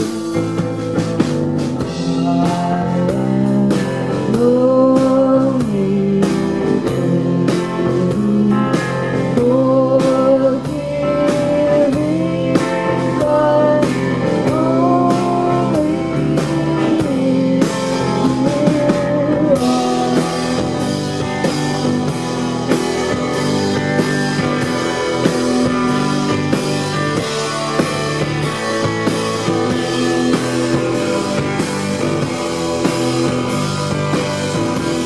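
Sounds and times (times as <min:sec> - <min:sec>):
electric guitar: 0:00.0 - 0:35.0
drum hits: 0:11.3 - 0:35.0.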